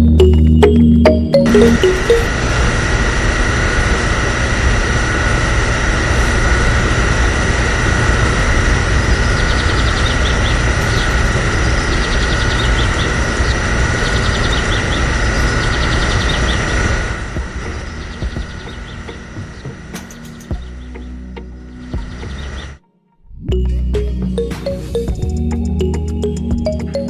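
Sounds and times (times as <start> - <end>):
motor running with high whine: 0.0 - 22.8.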